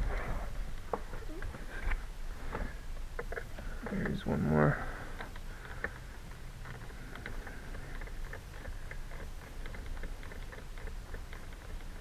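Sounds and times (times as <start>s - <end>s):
low hum: 0.0s - 3.1s.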